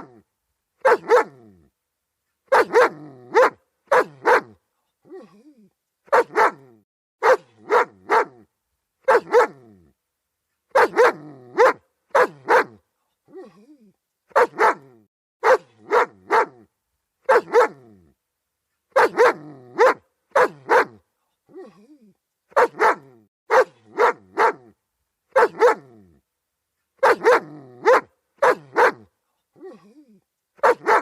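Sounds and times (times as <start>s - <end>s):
dog barking: 0.8s - 1.4s, 2.5s - 4.6s, 6.1s - 9.7s, 10.7s - 12.8s, 14.3s - 17.9s, 18.9s - 21.0s, 22.5s - 26.0s, 27.0s - 29.1s, 30.6s - 31.0s.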